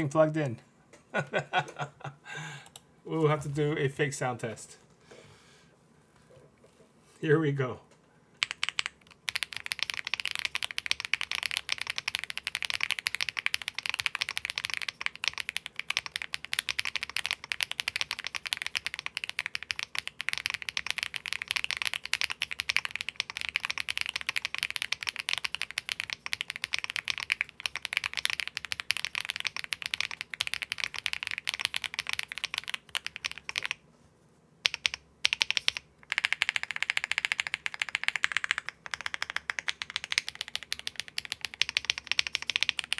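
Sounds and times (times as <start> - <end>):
fast mechanical keyboard typing: 8.4 - 33.8, 34.6 - 42.9.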